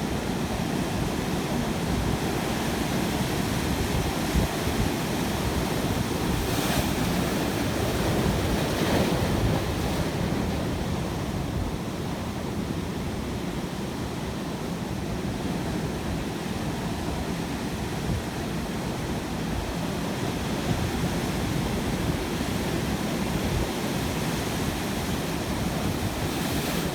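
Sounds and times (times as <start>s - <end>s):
waves washing onto shore: 0.0s - 14.4s, 17.6s - 26.9s.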